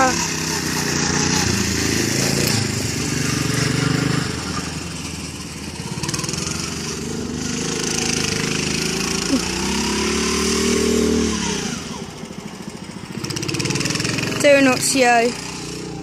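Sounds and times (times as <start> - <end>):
go-kart engine revving: 0.0 - 16.0.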